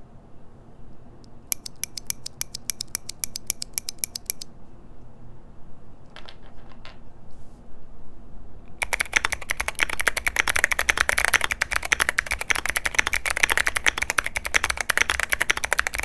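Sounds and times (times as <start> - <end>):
mechanical keyboard clicking: 1.5 - 4.5, 8.8 - 16.0.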